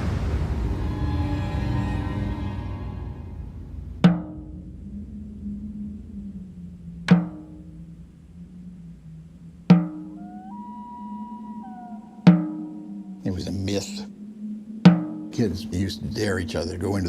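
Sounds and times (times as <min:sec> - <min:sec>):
slow sharp drum hits: 0:00.0 - 0:04.6, 0:07.1 - 0:07.6, 0:09.7 - 0:10.2, 0:12.3 - 0:12.8, 0:14.9 - 0:15.4
low steady drone: 0:00.0 - 0:17.0.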